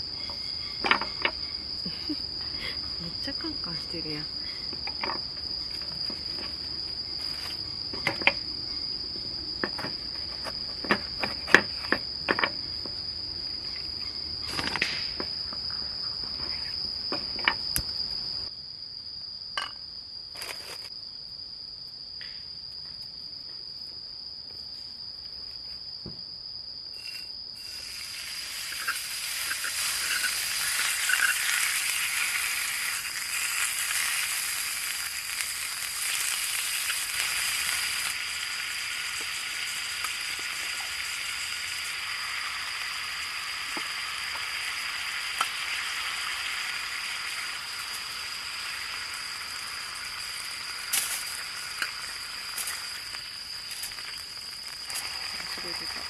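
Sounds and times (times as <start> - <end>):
insects trilling: 0.0 - 56.0
food sizzling in a pan: 27.0 - 56.0.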